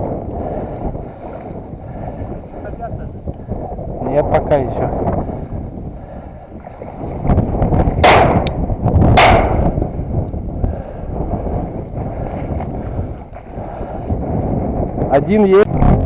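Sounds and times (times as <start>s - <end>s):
wind rumble on microphone: 0.0s - 16.0s
shotgun shots: 8.0s - 9.9s.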